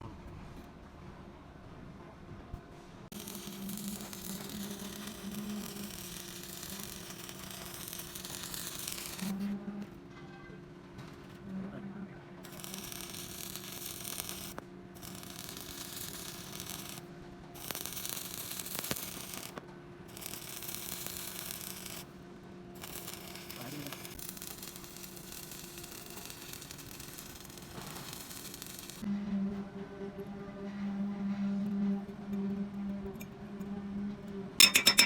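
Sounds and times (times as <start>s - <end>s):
arc welding crackling hiss: 3.1s - 9.4s, 12.4s - 22.1s, 22.8s - 29.1s.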